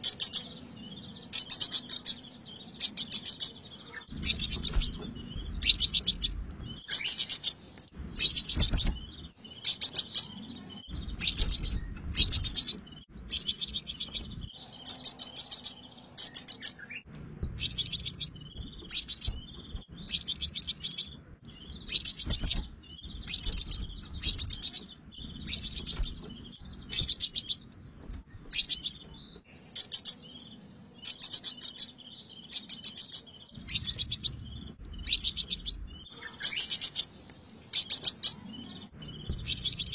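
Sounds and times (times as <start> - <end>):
bird chattering trills: 0.0 - 39.9.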